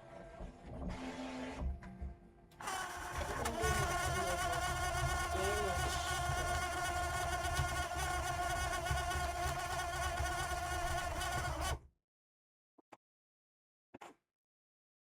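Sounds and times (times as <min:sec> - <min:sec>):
stepper motors whining: 0:02.6 - 0:11.7.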